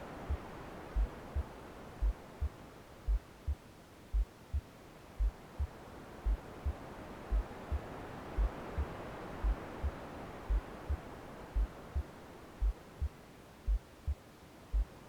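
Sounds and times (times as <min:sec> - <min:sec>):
soft white noise: 0:00.0 - 0:15.0
deep heartbeat thumps: 0:01.0 - 0:11.0, 0:11.6 - 0:15.0.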